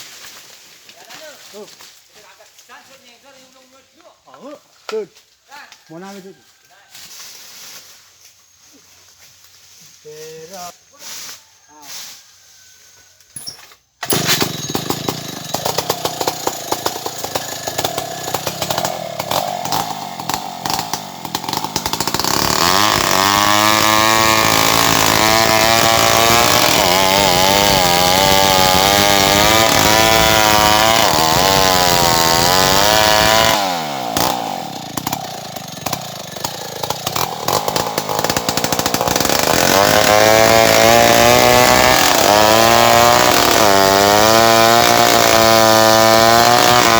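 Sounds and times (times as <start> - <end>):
chainsaw idling and revving: 14.0 - 46.9.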